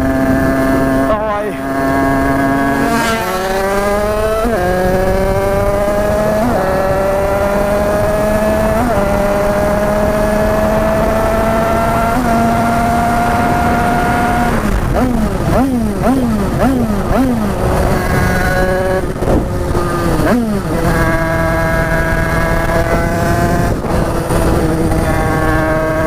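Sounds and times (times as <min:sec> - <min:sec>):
two-stroke engine accelerating: 0:00.0 - 0:26.0.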